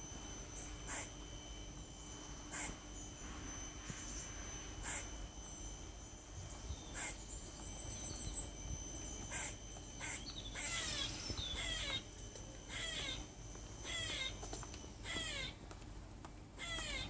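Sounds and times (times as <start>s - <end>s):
squirrel chirping calls: 0.6s - 1.1s, 2.5s - 2.8s, 4.8s - 5.1s, 6.7s - 8.5s, 9.3s - 15.6s, 16.6s - 17.0s.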